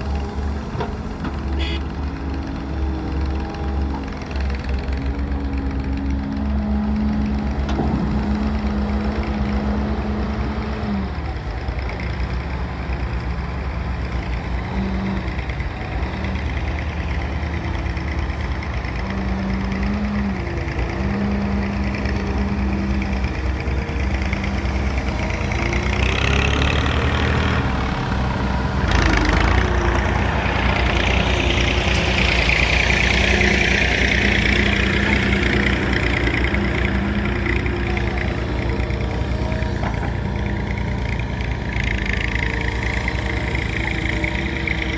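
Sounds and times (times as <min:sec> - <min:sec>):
excavator diesel engine: 0:00.0 - 0:44.9.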